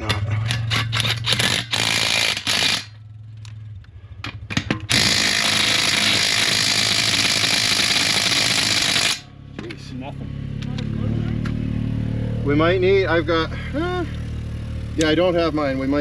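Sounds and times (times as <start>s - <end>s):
impact wrench hammering: 0.0s - 3.0s, 4.2s - 9.3s.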